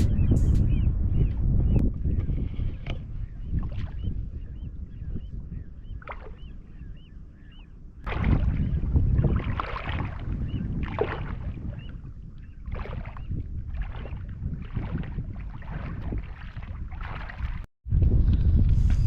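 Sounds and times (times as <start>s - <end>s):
wind rumble on microphone: 0.0s - 19.0s
water splashing and sloshing: 2.1s - 4.6s, 5.8s - 7.0s, 7.6s - 17.7s.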